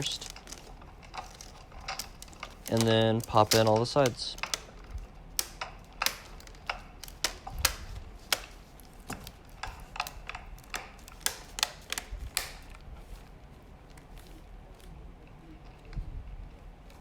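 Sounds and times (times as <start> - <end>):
plastic clips snapping into place: 0.0 - 12.9.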